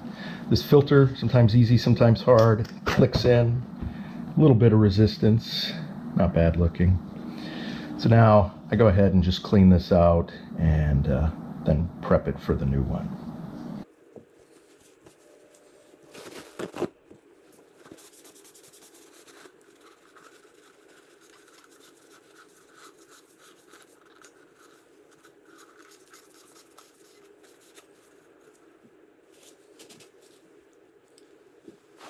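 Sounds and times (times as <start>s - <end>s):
rubbing and scratching on plastic: 14.3s - 30.6s.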